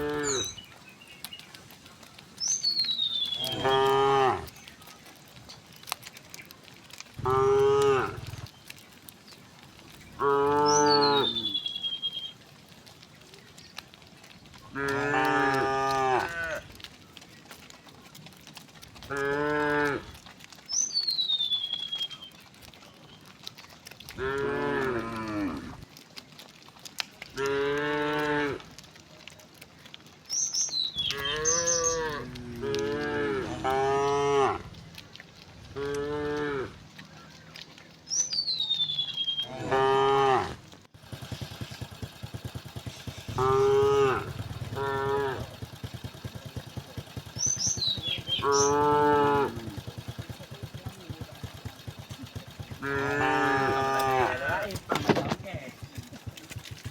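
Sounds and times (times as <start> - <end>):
cattle mooing: 0.0 - 0.6, 3.3 - 4.6, 7.2 - 8.5, 10.2 - 11.8, 14.6 - 16.8, 19.0 - 20.3, 24.1 - 25.8, 27.3 - 28.7, 31.1 - 34.8, 35.7 - 36.9, 39.4 - 41.2, 42.4 - 46.8, 47.8 - 55.1.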